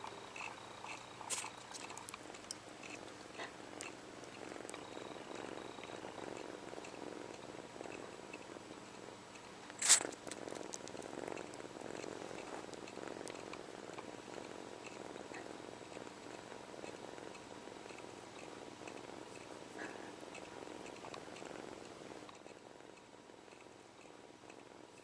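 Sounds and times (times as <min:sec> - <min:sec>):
kitten purring: 0:00.0 - 0:25.0
wet sucking clicks: 0:09.4 - 0:11.6
kitten sneezing: 0:09.8 - 0:10.1.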